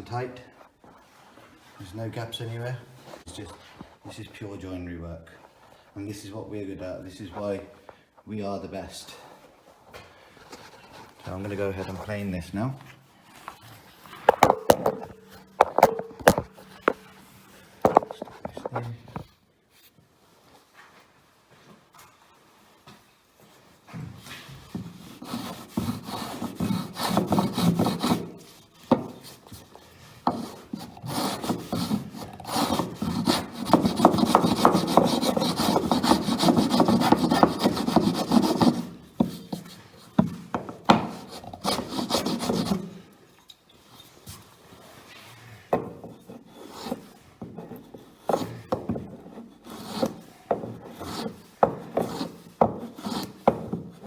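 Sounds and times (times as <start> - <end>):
plane scraping wood: 24.6 - 43.0, 44.9 - 54.0.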